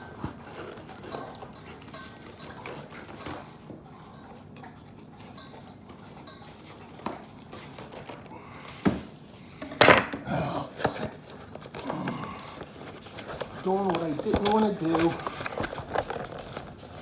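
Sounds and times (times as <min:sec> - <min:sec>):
cardboard tearing: 0:10.7 - 0:17.0.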